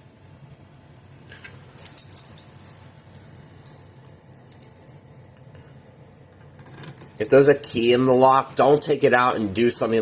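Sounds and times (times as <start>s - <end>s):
keys jangling: 1.7s - 5.0s.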